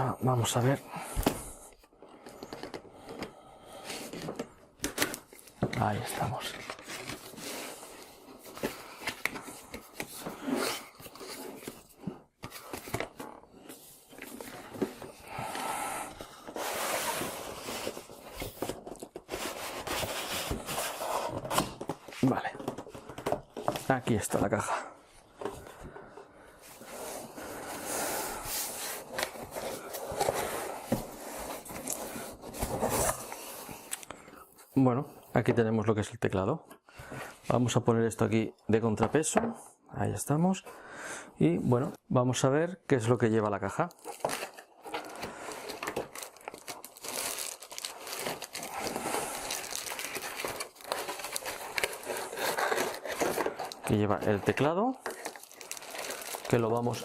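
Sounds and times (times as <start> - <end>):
cardboard rustling and scraping: 3.9 - 24.5, 26.7 - 33.9, 44.0 - 57.0
packaging crinkling and rustling: 43.9 - 57.0.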